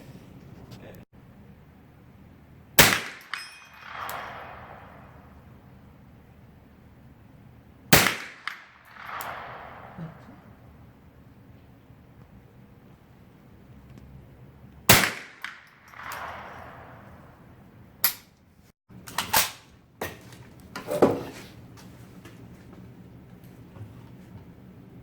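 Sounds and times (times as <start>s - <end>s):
rifle shots: 2.8s - 5.7s, 7.9s - 11.0s, 14.9s - 18.2s.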